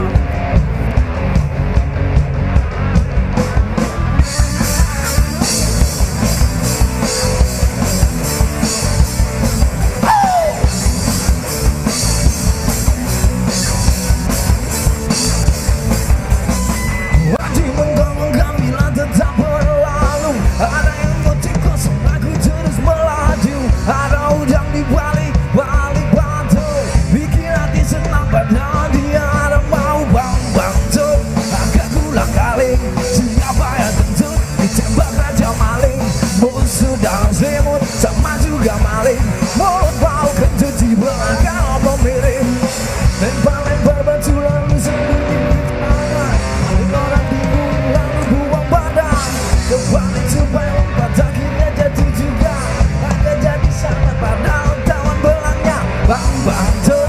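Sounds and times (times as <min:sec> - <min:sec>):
distorted guitars: 0:00.0 - 0:57.0
drumbeat: 0:00.0 - 0:57.0
punk rock band playing: 0:00.0 - 0:57.0.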